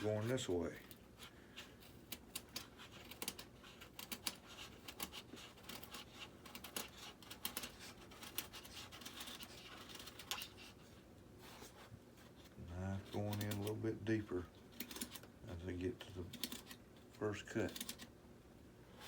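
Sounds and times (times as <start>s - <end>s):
knife cutting through foam: 1.7s - 10.8s.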